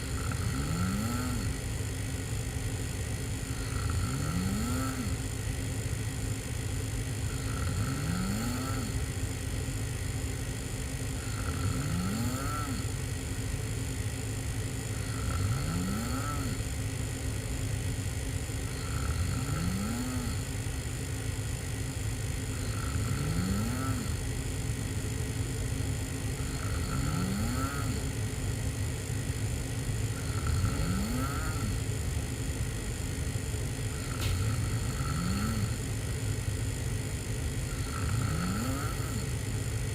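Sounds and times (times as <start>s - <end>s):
person snoring: 0.0s - 2.2s, 3.0s - 5.8s, 6.4s - 9.2s, 10.3s - 13.2s, 14.4s - 16.8s, 18.4s - 21.2s, 22.2s - 25.0s, 26.2s - 32.2s, 33.8s - 36.8s, 37.4s - 39.9s.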